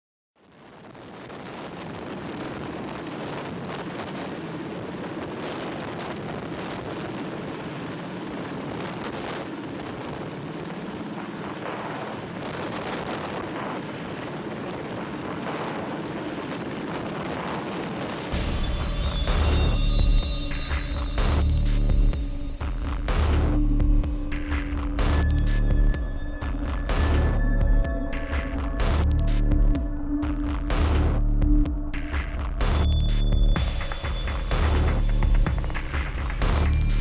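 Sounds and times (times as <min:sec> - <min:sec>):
engine-like rumble: 0:18.3 - 0:29.8, 0:32.6 - 0:37.0.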